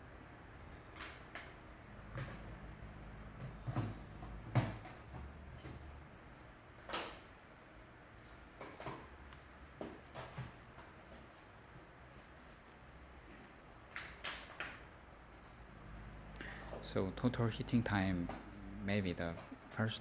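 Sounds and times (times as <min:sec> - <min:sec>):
low hum: 0:15.5 - 0:19.0.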